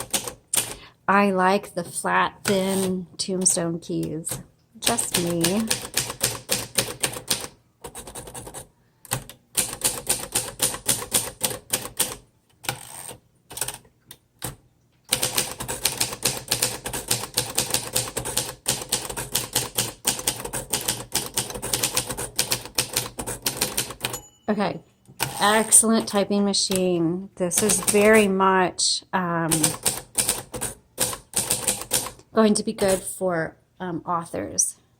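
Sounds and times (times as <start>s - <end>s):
typewriter clacking: 0.0s - 0.8s, 2.4s - 8.6s, 9.2s - 13.8s, 15.1s - 24.2s, 27.5s - 28.3s, 29.5s - 32.2s.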